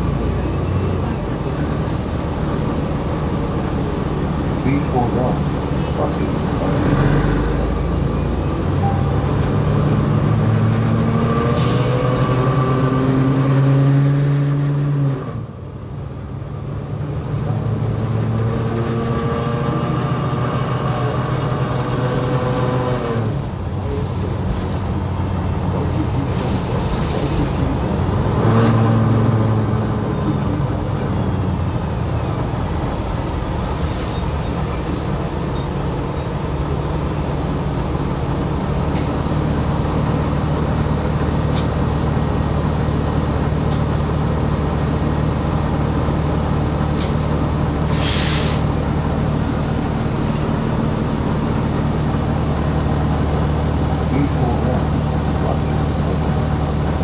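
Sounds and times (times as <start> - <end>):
bus engine revving: 0.0 - 16.0, 16.6 - 57.0
short air hiss: 47.9 - 48.7.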